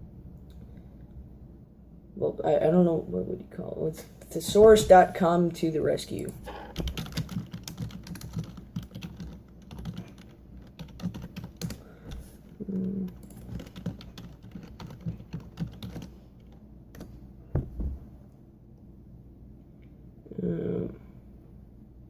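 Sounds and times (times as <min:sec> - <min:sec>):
louder thump: 0:17.5 - 0:18.1.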